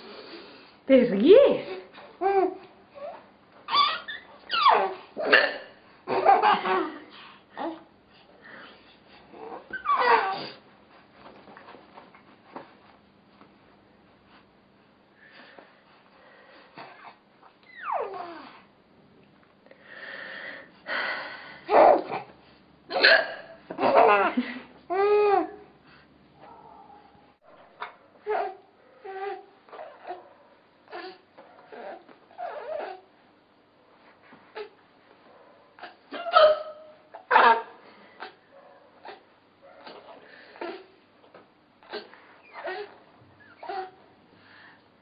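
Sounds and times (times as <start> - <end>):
high-pitched vocal squeal: 3.7 - 4.9
baby laughing: 3.7 - 5.4, 6.1 - 7.8, 23.7 - 25.5
short hiccup: 5.2 - 5.8, 22.9 - 23.6
woman hiccuping: 5.2 - 7.0, 22.9 - 24.4
woman laughing: 23.9 - 24.8.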